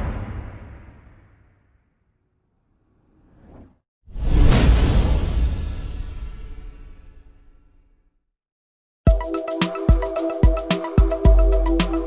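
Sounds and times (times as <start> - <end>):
loud hit: 0.0 - 1.8.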